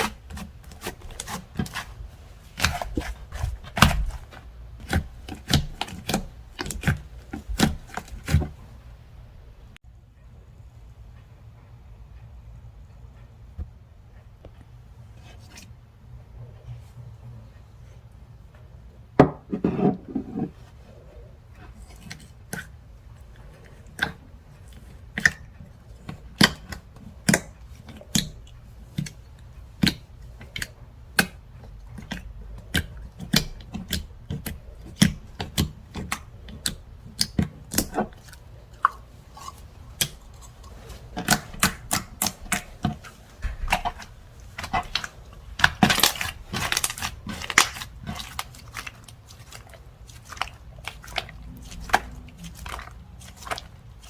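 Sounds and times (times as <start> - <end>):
slime clicking and popping: 41.2 - 53.7.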